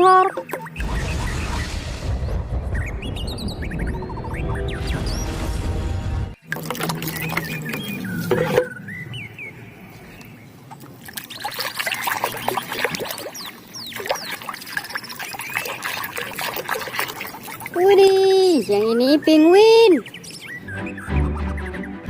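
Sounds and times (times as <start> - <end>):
small splashes and clicks: 6.4 - 7.9, 10.2 - 18.4
water pouring and trickling: 6.4 - 8.7, 10.7 - 18.9.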